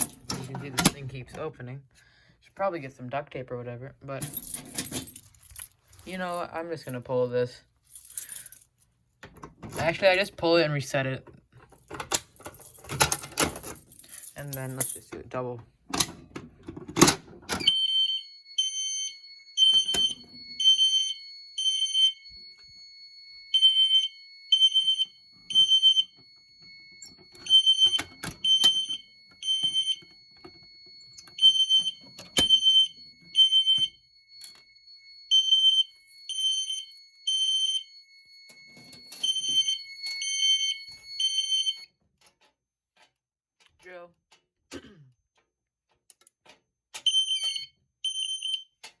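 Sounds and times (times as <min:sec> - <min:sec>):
fire alarm horn beeps: 0:17.6 - 0:41.9, 0:47.0 - 0:48.7.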